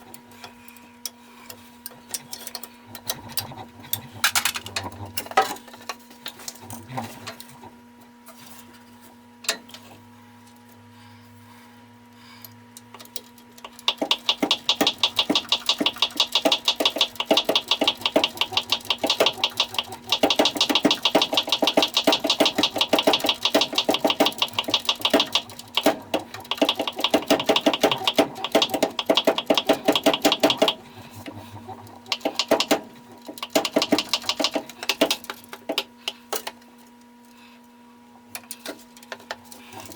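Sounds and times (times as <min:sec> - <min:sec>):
steady hum: 0:00.0 - 0:39.9
rapid mechanical clicking: 0:13.0 - 0:36.6.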